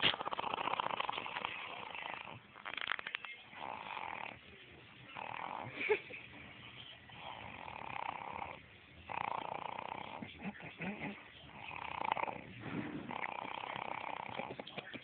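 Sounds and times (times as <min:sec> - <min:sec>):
heavy rasping snoring: 0:00.1 - 0:02.4, 0:03.6 - 0:04.4, 0:05.2 - 0:05.8, 0:07.2 - 0:14.7
quiet breaths: 0:03.4 - 0:15.0.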